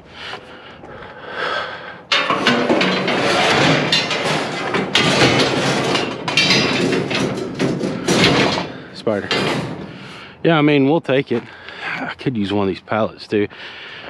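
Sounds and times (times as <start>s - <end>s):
hard objects knocking and scraping: 2.1s - 10.3s.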